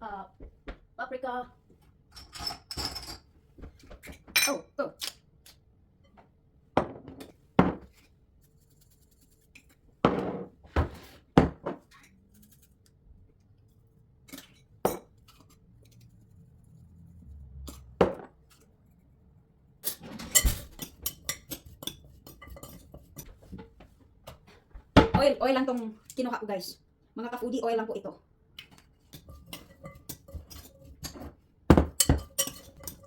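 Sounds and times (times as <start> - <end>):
dishes clinking and knocking: 2.1 - 3.3, 6.8 - 7.9, 10.0 - 11.9, 17.7 - 18.4, 19.8 - 23.7, 29.2 - 33.0.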